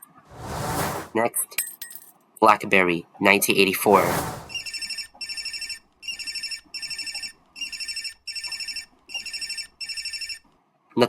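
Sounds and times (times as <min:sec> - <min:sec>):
electronic trilling phone ringtone: 0:04.9 - 0:10.4.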